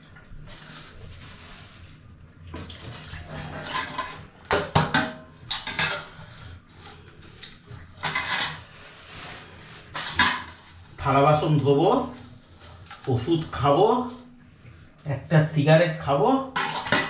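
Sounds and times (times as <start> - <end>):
plates and utensils clattering: 3.2 - 6.4, 7.9 - 8.7, 9.8 - 10.8, 16.6 - 17.0.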